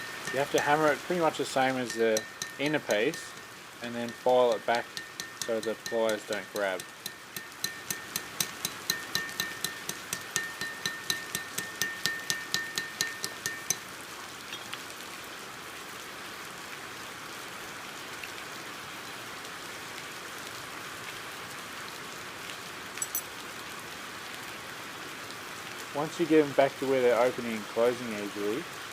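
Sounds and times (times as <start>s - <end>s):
hammer tapping metal: 0.0s - 13.9s
steady hiss: 0.0s - 14.6s.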